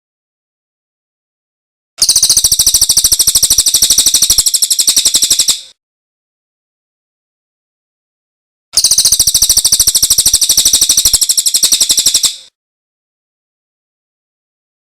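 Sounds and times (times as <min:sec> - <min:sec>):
songbird trill: 0:02.0 - 0:05.7, 0:08.8 - 0:12.5.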